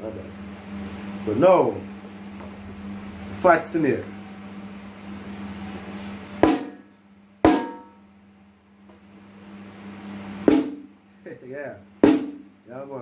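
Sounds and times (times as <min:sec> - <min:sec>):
snare drum strikes: 0:06.4 - 0:06.9, 0:07.5 - 0:08.0, 0:10.5 - 0:10.9, 0:12.0 - 0:12.5.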